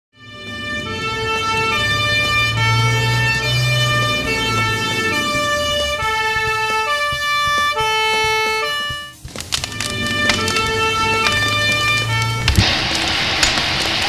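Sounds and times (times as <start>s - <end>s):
reedy synth melody: 0.3s - 9.2s.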